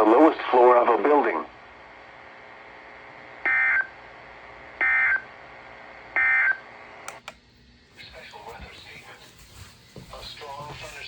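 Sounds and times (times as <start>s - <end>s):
clicks: 7.1s - 7.4s.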